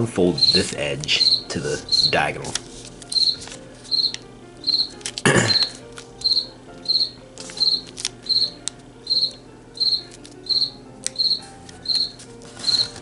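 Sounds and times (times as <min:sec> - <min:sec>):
cricket chirping: 0:00.4 - 0:02.1, 0:03.2 - 0:04.9, 0:06.2 - 0:08.5, 0:09.1 - 0:12.9
paper creasing ticks: 0:00.4 - 0:05.2, 0:05.9 - 0:13.0
paper rustling: 0:01.7 - 0:03.9, 0:05.0 - 0:06.1, 0:07.4 - 0:08.8, 0:11.7 - 0:13.0.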